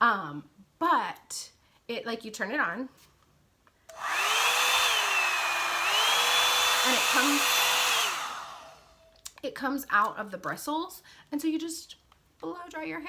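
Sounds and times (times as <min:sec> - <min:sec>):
blowing air rush: 0:03.9 - 0:08.9
hair dryer motor whine: 0:03.9 - 0:09.0.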